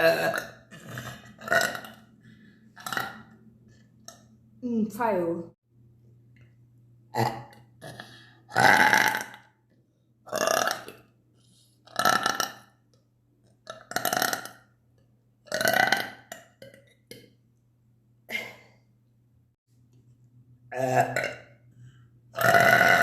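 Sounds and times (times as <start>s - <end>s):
woman burping: 0.0s - 2.0s, 7.1s - 9.5s, 20.7s - 21.6s, 22.4s - 23.0s.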